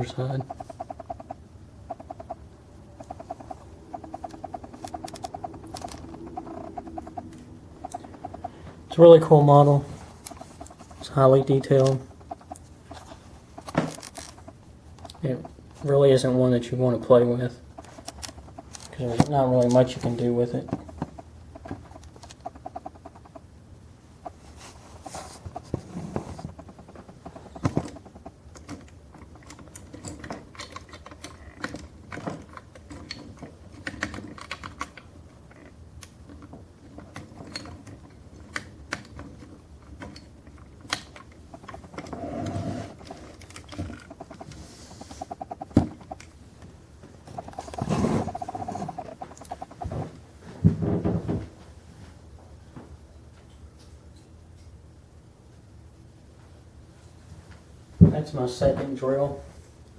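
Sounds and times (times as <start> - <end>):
rustling handling noises: 0.0 - 16.3.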